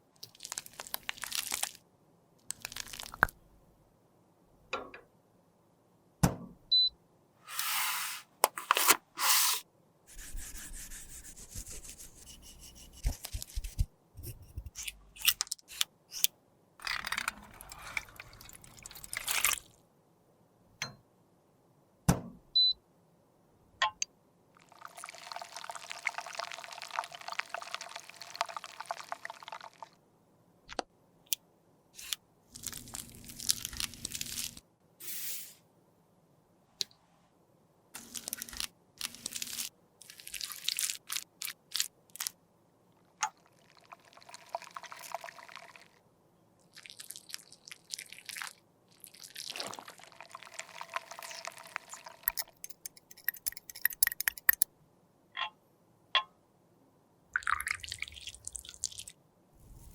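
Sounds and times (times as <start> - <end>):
tools and containers clicking: 14.2 - 18.3, 51.3 - 54.7
makeup scraping and crunching: 49.5 - 54.6.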